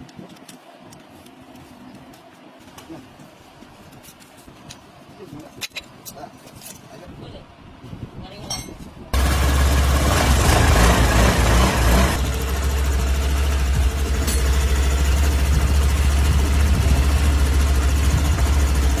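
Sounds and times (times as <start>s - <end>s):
scooter engine idling: 9.2s - 19.0s.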